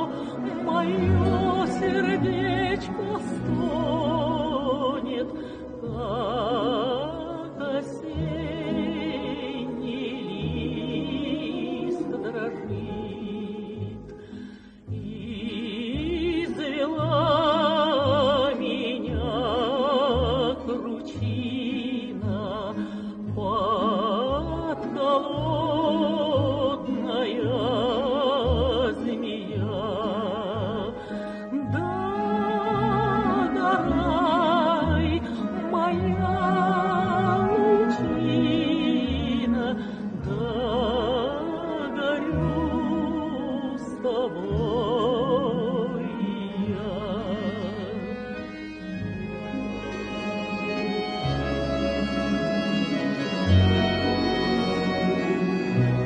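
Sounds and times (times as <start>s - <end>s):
woman singing with vibrato: 0.0s - 14.1s, 14.9s - 48.1s
instrumental accompaniment: 31.0s - 56.0s.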